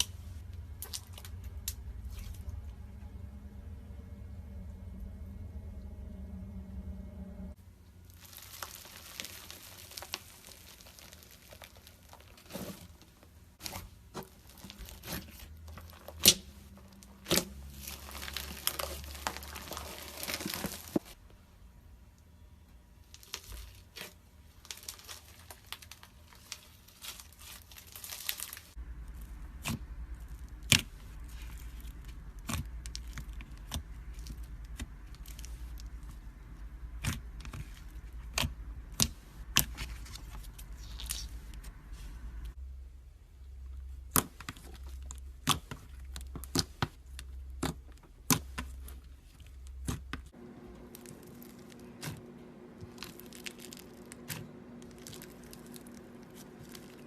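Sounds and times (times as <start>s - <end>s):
packaging crinkling and tearing: 8.1s - 21.2s, 23.0s - 42.5s, 50.8s - 57.0s.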